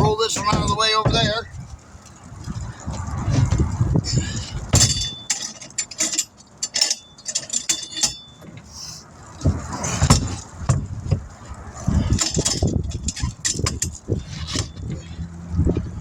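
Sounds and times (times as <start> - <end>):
heavy knocks: 0.0 - 1.7, 3.3 - 5.3, 9.4 - 11.3
low rumbling: 0.0 - 5.4, 8.7 - 16.0
metal clinking: 0.0 - 8.6.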